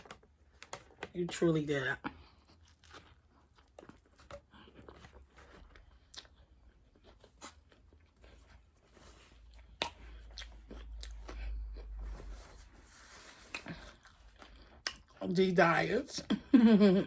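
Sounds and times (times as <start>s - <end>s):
person chewing and biting food: 2.0s - 15.3s
wet clicks and crunches: 13.5s - 15.3s.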